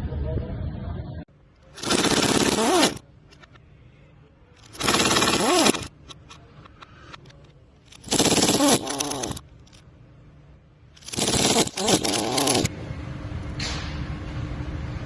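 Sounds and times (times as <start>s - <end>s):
power wrench hammering: 1.7s - 3.0s, 4.6s - 6.2s, 7.9s - 9.4s, 11.0s - 12.7s.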